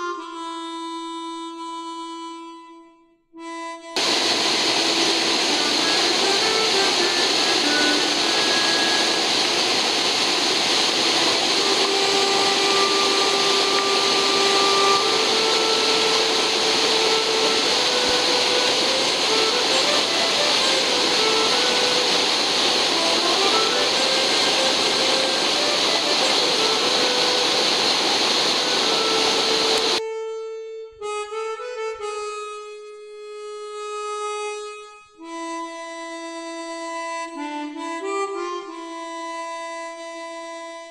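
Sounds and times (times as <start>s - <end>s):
mountain torrent rushing: 4.0s - 30.0s
soft background music: 4.6s - 32.0s.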